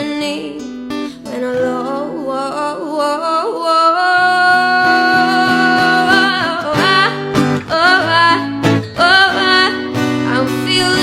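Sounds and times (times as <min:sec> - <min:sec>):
strummed acoustic guitar: 0:00.0 - 0:03.2, 0:04.2 - 0:11.0
person singing: 0:00.0 - 0:11.0.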